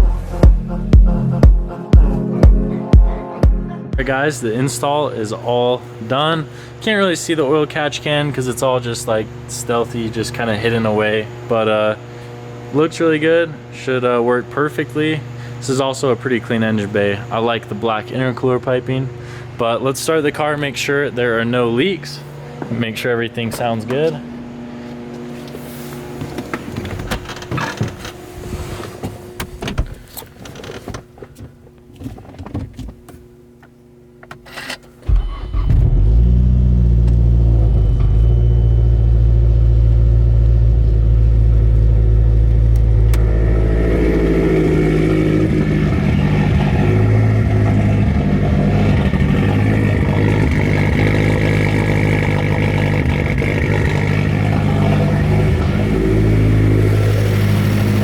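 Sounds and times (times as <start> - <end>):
car engine starting and idling: 33.6 - 58.0.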